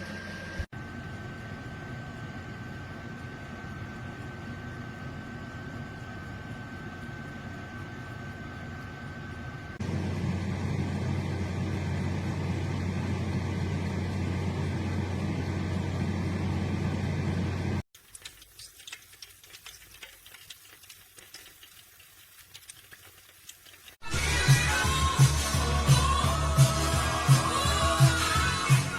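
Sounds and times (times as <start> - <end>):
air fryer fan humming: 0.0 - 28.9
faint crackling and clicking: 18.0 - 24.0.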